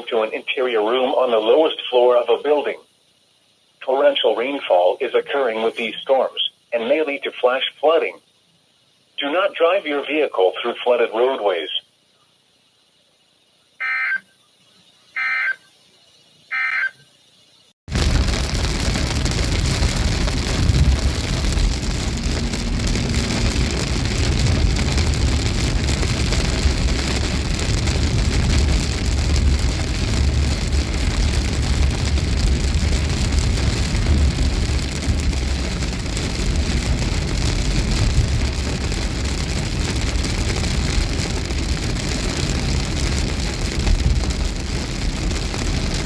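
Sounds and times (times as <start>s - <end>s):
loud rushing noise with rumble: 17.9s - 46.0s.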